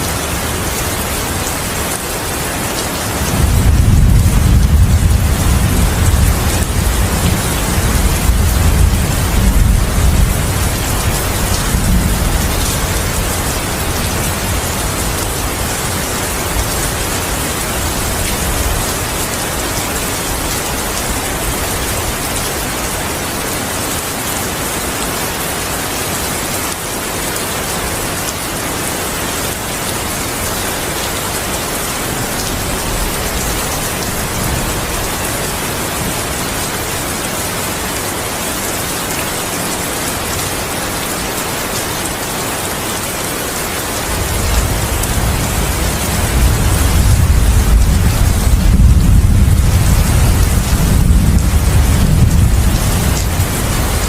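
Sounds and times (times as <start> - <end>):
heavy rain falling: 0.0 - 54.0
thunder rumble: 3.3 - 18.9, 44.2 - 54.0.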